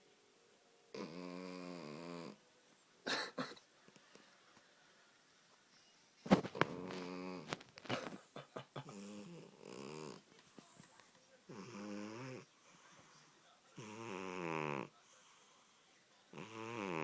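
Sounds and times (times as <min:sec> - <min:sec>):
cat snoring: 0:00.9 - 0:02.4, 0:06.6 - 0:07.6, 0:08.9 - 0:10.3, 0:11.5 - 0:12.5, 0:13.8 - 0:15.7, 0:16.3 - 0:17.0.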